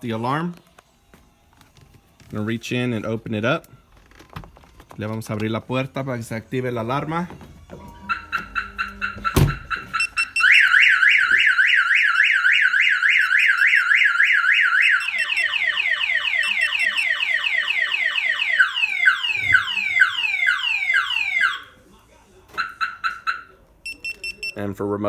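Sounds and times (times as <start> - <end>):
car alarm siren: 7.8 - 21.8, 22.6 - 24.5
thump: 9.2 - 9.9.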